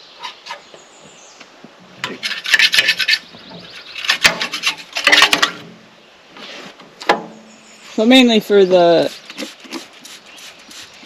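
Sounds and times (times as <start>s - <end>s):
rapid scrubbing strokes: 2.0s - 5.6s, 9.0s - 11.0s.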